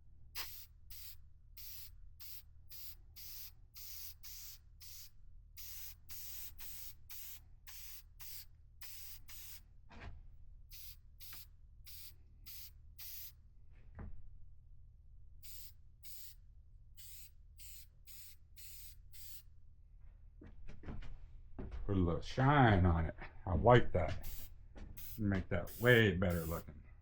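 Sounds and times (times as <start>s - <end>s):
aerosol can spraying: 0.4s - 9.6s, 10.7s - 13.4s, 15.4s - 16.4s, 17.0s - 19.4s, 24.1s - 26.6s.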